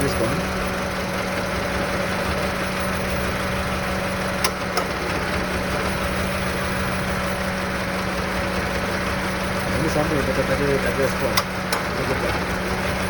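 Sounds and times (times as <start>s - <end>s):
car engine idling rough: 0.0s - 13.0s
sharp clicks: 4.4s - 5.2s, 11.2s - 12.1s.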